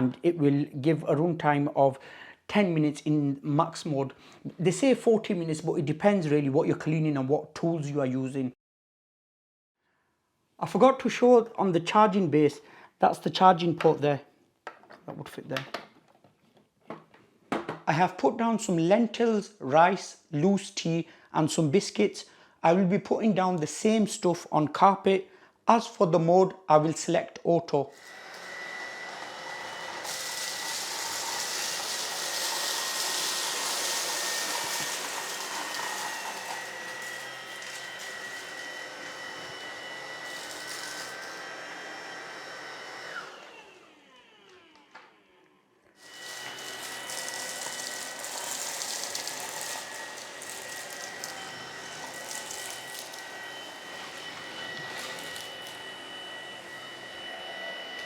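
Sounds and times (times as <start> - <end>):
cordless vacuum whining: 27.9 - 58.0.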